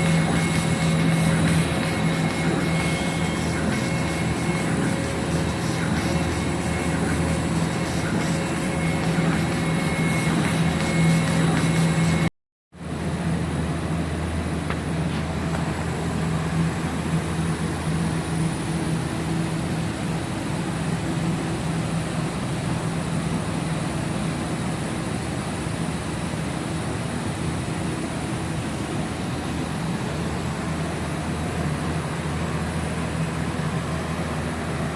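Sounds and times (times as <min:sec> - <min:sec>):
laser engraver humming: 0:00.0 - 0:12.3.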